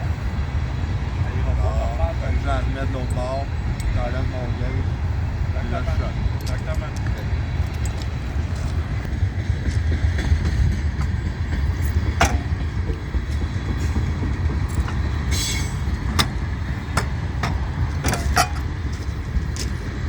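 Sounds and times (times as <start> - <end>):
low rumble: 0.0 - 20.0
sharp metallic clanks: 10.7 - 19.8
short rattle: 11.7 - 13.1.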